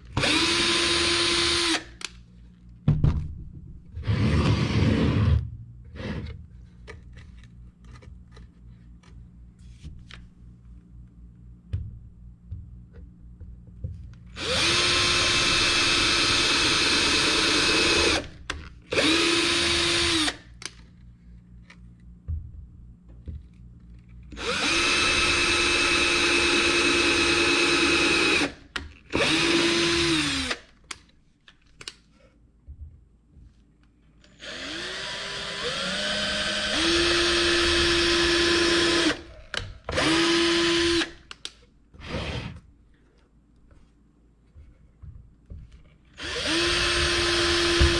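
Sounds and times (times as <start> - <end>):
power drill whining: 0.2 - 2.0, 14.4 - 20.4, 24.4 - 30.6, 34.3 - 41.1, 42.0 - 42.6, 46.2 - 47.9.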